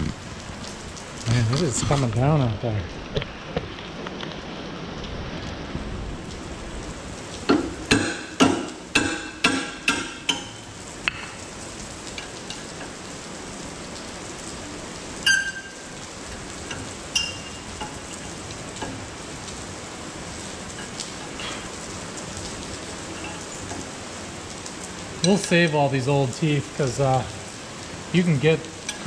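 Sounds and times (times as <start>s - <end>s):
heavy rain falling: 0.0s - 29.0s
ringing metallic clinks: 15.3s - 15.9s, 16.7s - 18.0s.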